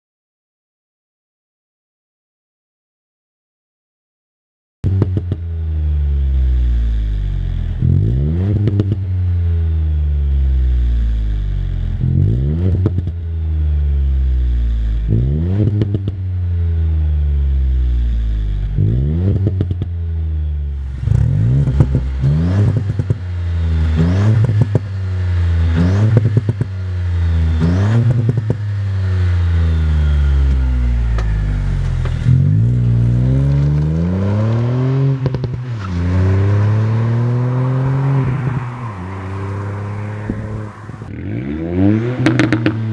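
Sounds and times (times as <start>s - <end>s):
car engine revving: 4.8s - 42.9s
exhaust crackles: 20.8s - 42.9s.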